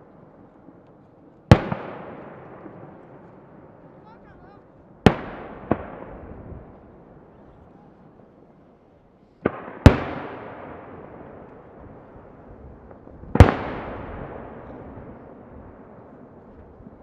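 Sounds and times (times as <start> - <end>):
firework shells booming: 1.5 - 3.8, 5.0 - 7.1, 9.4 - 17.0.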